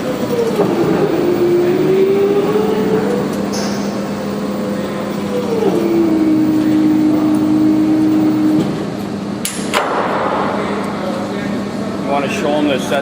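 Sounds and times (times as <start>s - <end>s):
low hum: 0.0s - 12.2s
machine motor whining: 0.0s - 13.0s
sharp knocks: 9.4s - 10.6s.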